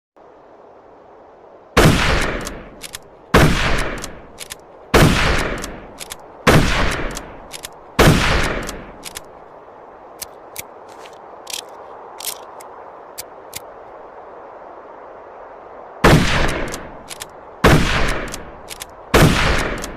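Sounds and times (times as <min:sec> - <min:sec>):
rifle shots: 0:01.8 - 0:02.6, 0:03.3 - 0:04.2, 0:04.9 - 0:05.8, 0:06.5 - 0:07.3, 0:08.0 - 0:09.0, 0:16.0 - 0:16.8, 0:17.6 - 0:18.5, 0:19.1 - 0:19.9
rifle bolt clicks: 0:02.2 - 0:03.1, 0:03.8 - 0:04.6, 0:05.4 - 0:06.2, 0:06.8 - 0:07.8, 0:08.4 - 0:09.3, 0:10.2 - 0:13.7, 0:16.4 - 0:17.3, 0:18.0 - 0:19.0, 0:19.6 - 0:19.9.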